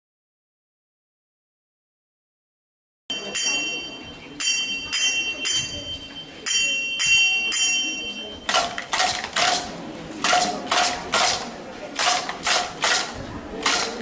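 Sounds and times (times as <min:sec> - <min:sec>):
bell strikes ringing: 0:03.1 - 0:08.8
noisier sound: 0:03.1 - 0:14.0.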